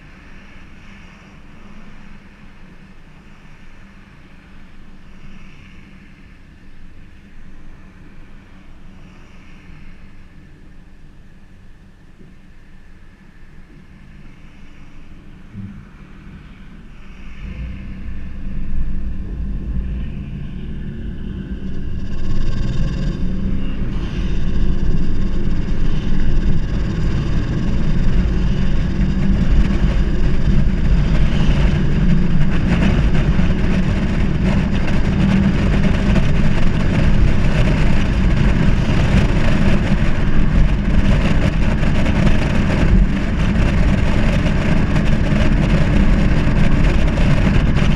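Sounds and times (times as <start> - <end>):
car engine and exhaust accelerating: 13.4 - 47.9.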